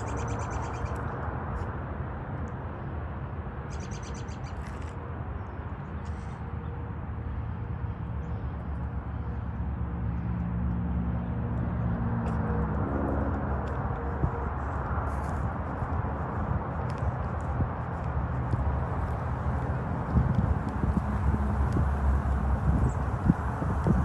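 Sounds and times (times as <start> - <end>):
low hum: 11.1 - 24.0
wind buffeting microphone: 12.6 - 24.0.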